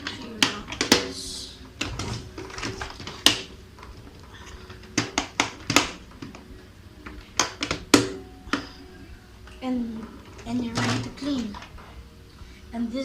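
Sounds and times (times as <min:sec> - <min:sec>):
plastic parts clicking together: 0:07.0 - 0:08.6.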